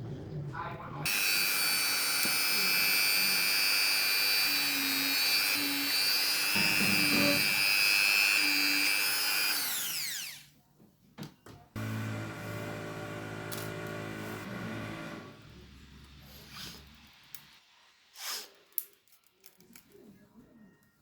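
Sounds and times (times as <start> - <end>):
electric motor whining: 1.1 - 10.5, 11.8 - 15.4.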